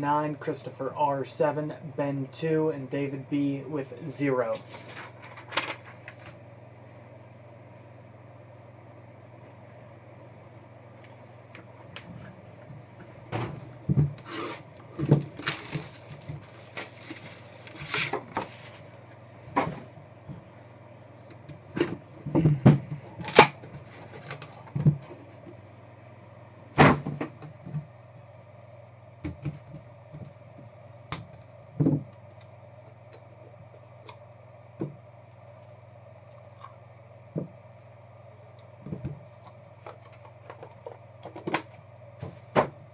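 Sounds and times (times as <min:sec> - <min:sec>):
cards rustling: 0:15.2 - 0:19.0.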